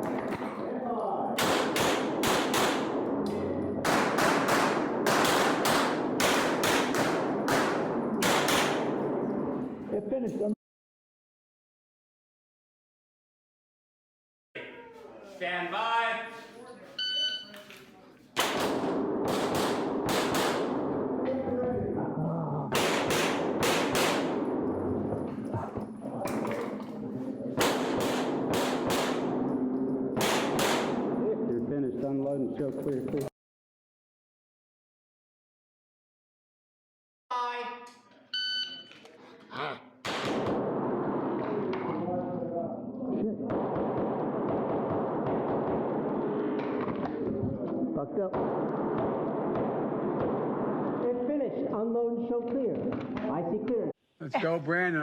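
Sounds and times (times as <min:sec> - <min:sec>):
pistol shots echoing indoors: 0:01.4 - 0:09.6, 0:18.4 - 0:21.2, 0:22.7 - 0:25.2, 0:27.6 - 0:31.2, 0:40.0 - 0:41.9, 0:43.5 - 0:47.1.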